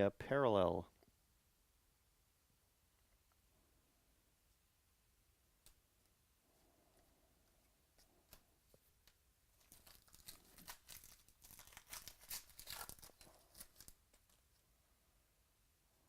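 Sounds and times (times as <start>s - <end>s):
wrapper tearing and crinkling: 9.6s - 14.4s.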